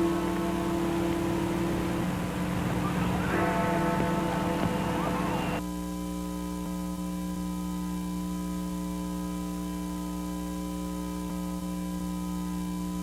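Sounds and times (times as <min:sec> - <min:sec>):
electrical hum: 0:00.0 - 0:05.6
garbled noisy audio: 0:00.0 - 0:05.6.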